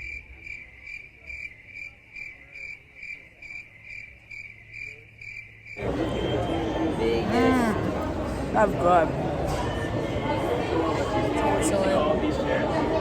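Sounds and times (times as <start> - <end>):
cricket chirping: 0.0 - 6.2.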